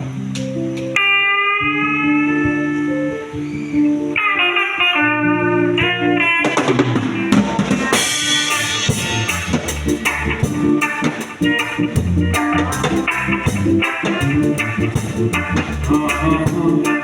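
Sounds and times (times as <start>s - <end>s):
sustained guitar-like notes: 0.0s - 17.0s
drum kit beat: 6.4s - 17.0s.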